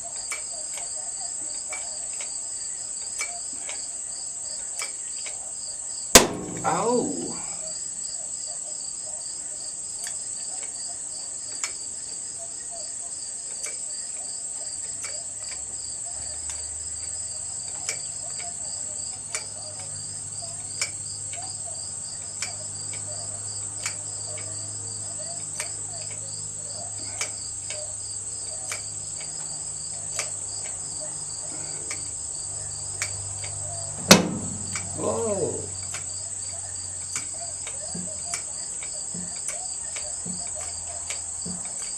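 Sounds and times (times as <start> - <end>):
faint regular clicks: 0.0 - 9.1, 9.7 - 41.9
crickets chirping: 0.0 - 41.9
sharp loud crack: 6.2 - 7.6, 34.1 - 35.7.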